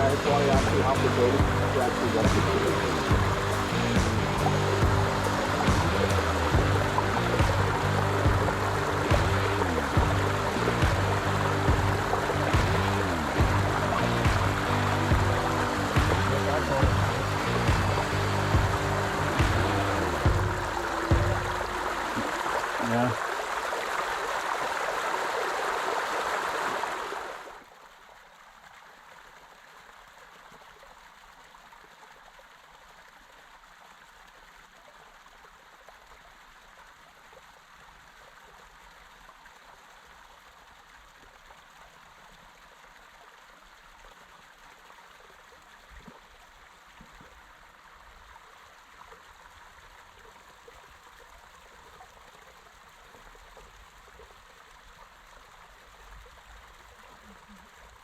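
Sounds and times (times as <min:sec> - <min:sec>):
creek water rushing: 0:00.0 - 0:58.0
water trickling: 0:00.0 - 0:58.0.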